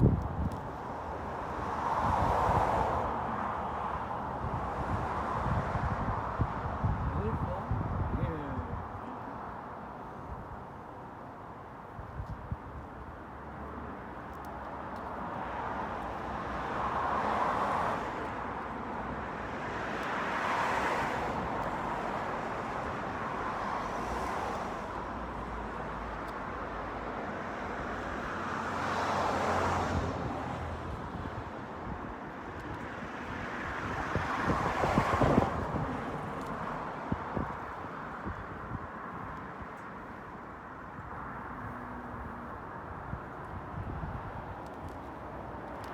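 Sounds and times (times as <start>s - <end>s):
wind rumble on microphone: 0.0s - 9.4s, 11.9s - 13.2s, 29.7s - 45.9s
cars passing: 0.0s - 10.5s, 13.2s - 45.9s.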